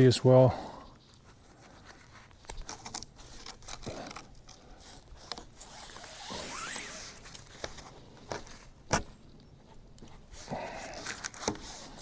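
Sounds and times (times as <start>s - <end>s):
rope scraping against bark: 1.2s - 8.7s
faint rising squeak: 5.7s - 7.2s.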